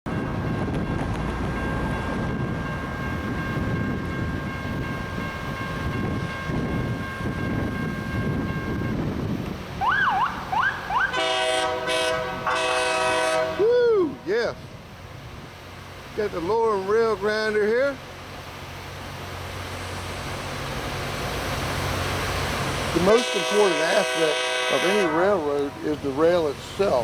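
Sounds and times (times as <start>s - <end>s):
rail grinder rumbling grind: 0.1s - 9.8s, 10.4s - 27.0s
siren whoops: 9.8s - 11.4s
locomotive horn blasts: 10.1s - 13.7s, 23.0s - 26.2s.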